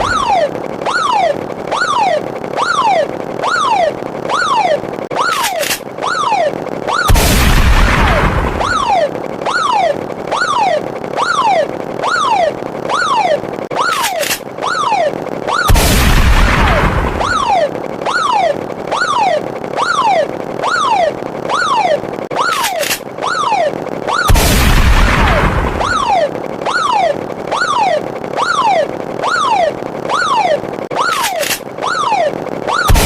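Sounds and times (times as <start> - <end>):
quick clicks: 0.0 - 7.2, 13.7 - 14.8, 22.3 - 23.4, 30.9 - 33.0.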